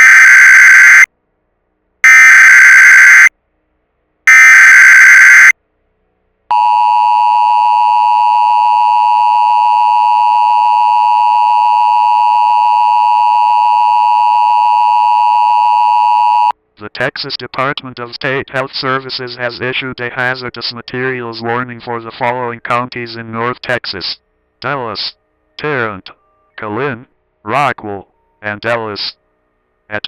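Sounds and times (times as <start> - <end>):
piercing two-tone alert signal: 0.0 - 1.1, 2.0 - 3.3, 4.3 - 5.5.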